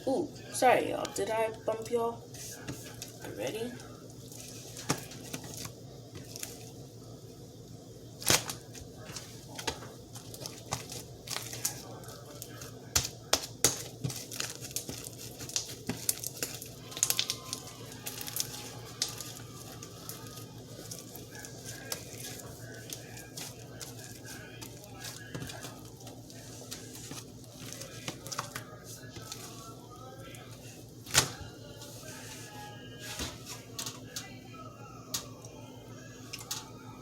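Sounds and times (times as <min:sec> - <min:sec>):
slime crackling and popping: 0:08.2 - 0:29.5.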